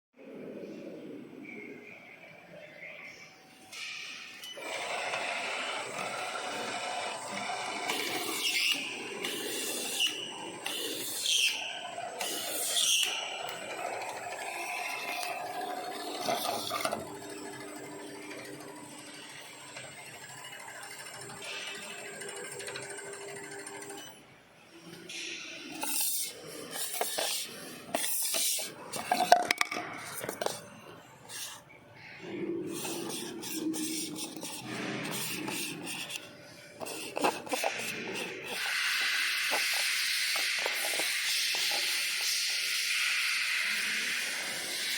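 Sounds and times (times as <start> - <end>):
labeling machine whirring: 3.8 - 24.2, 32.6 - 44.9
hissing rubbing noises: 25.1 - 29.3, 31.3 - 44.9.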